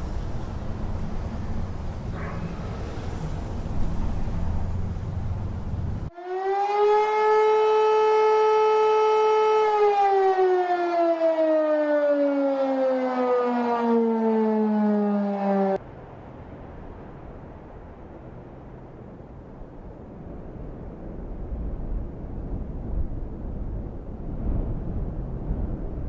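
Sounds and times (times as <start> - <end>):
siren-like wail: 6.1 - 15.8.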